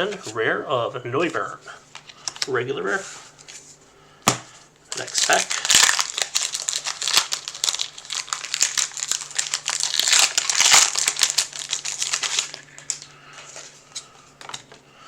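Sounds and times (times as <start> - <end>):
foil wrapper crinkling: 4.9 - 14.7.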